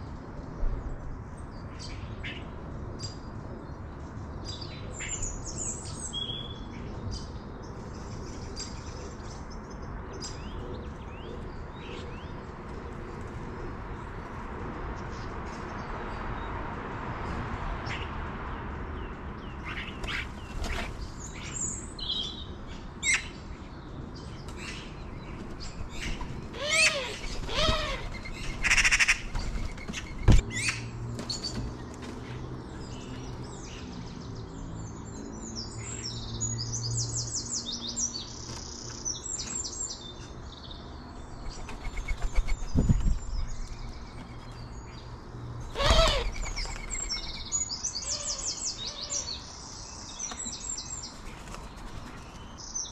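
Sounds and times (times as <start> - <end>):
small birds chirping: 19.0 - 52.9
louder lower bird calls: 26.5 - 29.2, 45.7 - 46.8, 48.0 - 49.4.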